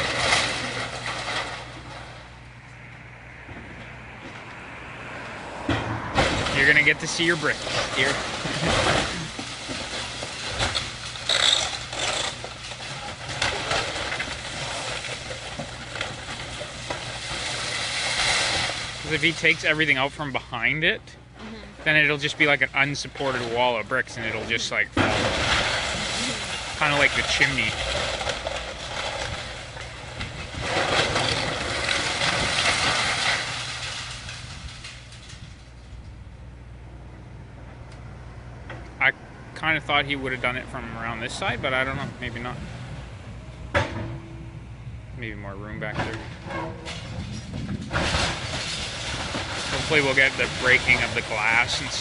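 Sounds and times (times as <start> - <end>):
debris clattering and knocking: 0.0 - 2.3, 5.6 - 20.8, 21.8 - 35.9, 45.8 - 52.0
demolition machine engine running: 0.0 - 4.5, 5.7 - 39.0, 39.6 - 52.0.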